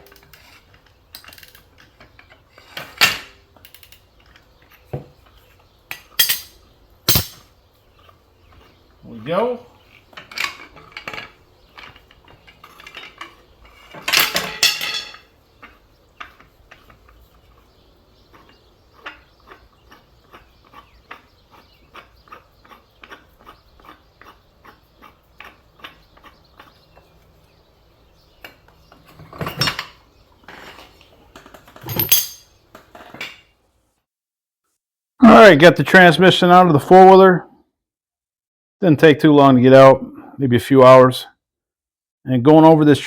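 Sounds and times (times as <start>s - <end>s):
loud metal clanks: 6.2s - 7.5s, 31.9s - 32.5s
metal clatter: 6.2s - 7.5s, 31.4s - 32.5s.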